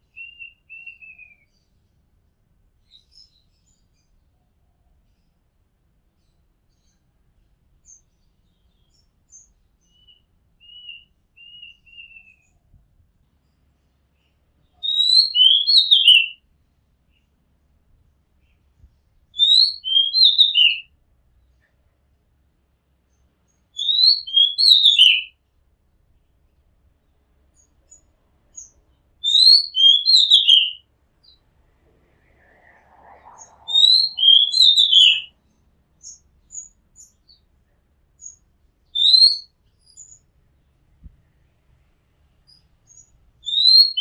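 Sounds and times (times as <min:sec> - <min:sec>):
bird singing whistled notes: 0:00.0 - 0:01.8, 0:07.8 - 0:12.6, 0:14.7 - 0:16.4, 0:19.4 - 0:20.9, 0:23.5 - 0:25.3, 0:27.6 - 0:31.4, 0:32.2 - 0:37.5, 0:38.2 - 0:40.2, 0:42.5 - 0:44.0.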